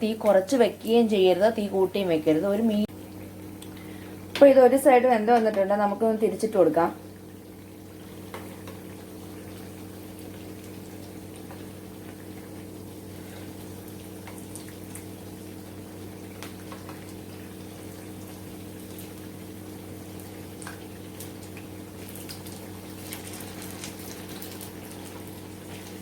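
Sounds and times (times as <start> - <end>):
fritters sizzling in hot oil: 2.9 - 26.0.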